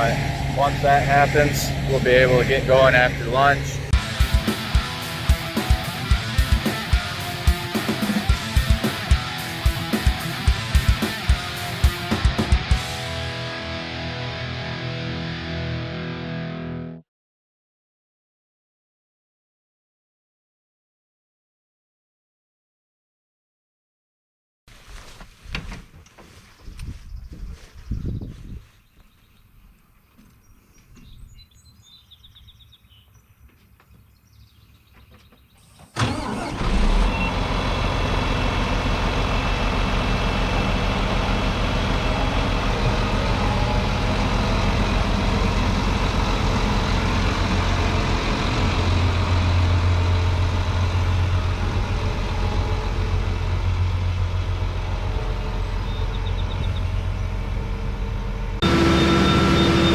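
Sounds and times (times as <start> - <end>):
heavy farm machine engine running: 0.0 - 13.6, 36.0 - 59.9.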